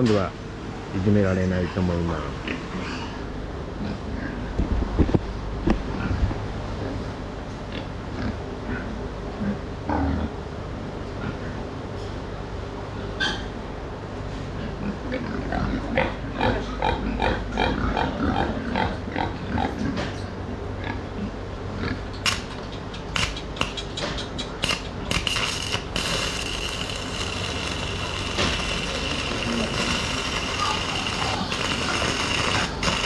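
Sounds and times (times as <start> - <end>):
pigs grunting: 7.7 - 10.4, 11.2 - 11.7, 14.5 - 20.2, 20.8 - 24.9, 26.3 - 33.0
high-pitched whine: 24.6 - 33.0.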